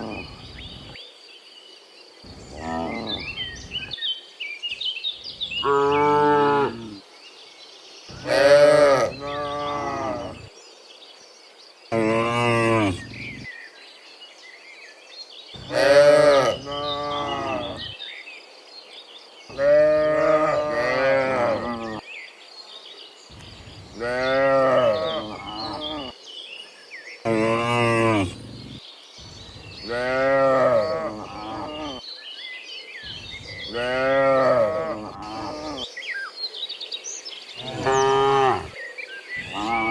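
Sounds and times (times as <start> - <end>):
cattle mooing: 8.1 - 10.5, 15.6 - 17.9, 19.5 - 22.0, 24.0 - 26.1, 27.3 - 28.8, 29.9 - 32.0, 33.7 - 35.8, 37.6 - 38.8.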